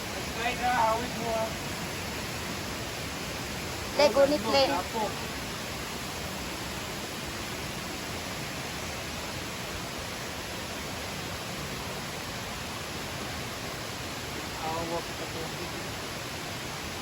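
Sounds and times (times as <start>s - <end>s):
waterfall rushing water: 0.0s - 17.0s.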